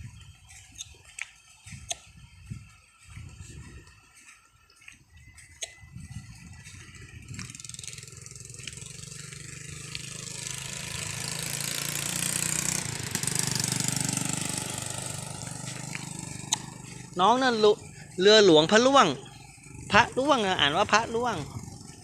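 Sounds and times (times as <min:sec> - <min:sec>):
vehicle engine running: 0:06.0 - 0:22.0.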